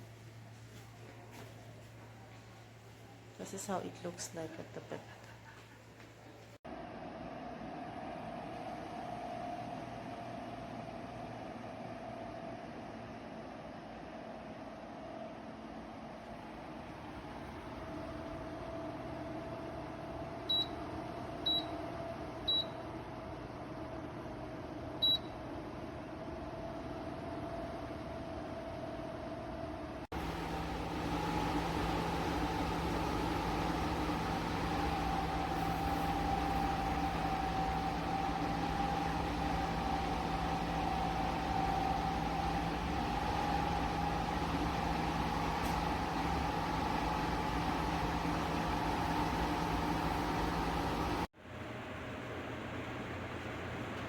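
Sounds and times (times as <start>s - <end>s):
tower fan whooshing: 26.1s - 54.0s.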